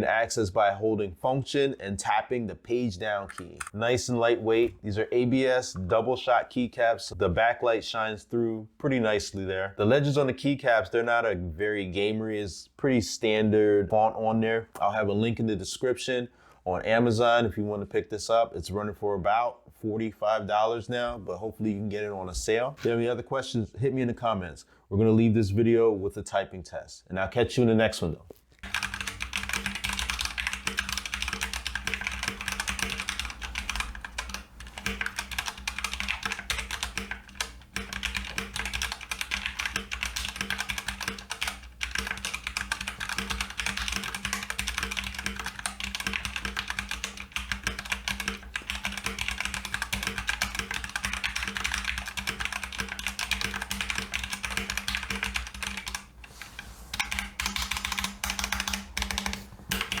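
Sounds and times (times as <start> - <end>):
mechanical keyboard typing: 28.6 - 60.0.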